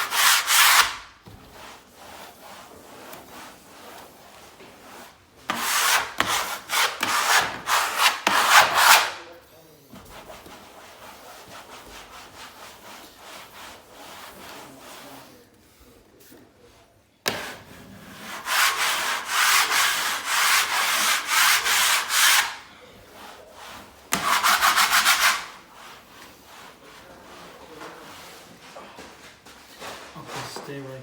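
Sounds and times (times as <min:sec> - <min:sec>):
spatula rubbing over wallpaper: 0:00.0 - 0:16.8, 0:17.4 - 0:29.1
fast scraping strokes: 0:18.2 - 0:28.3.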